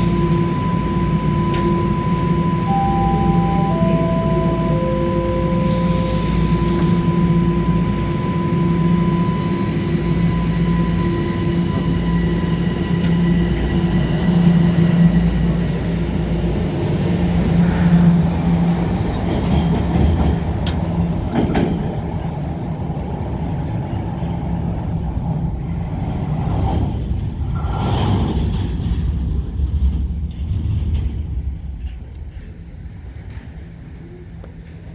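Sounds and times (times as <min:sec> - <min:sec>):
faint high tone: 0:00.0 - 0:12.0
train motor hum: 0:00.0 - 0:25.0
subway train on rails: 0:00.0 - 0:34.9.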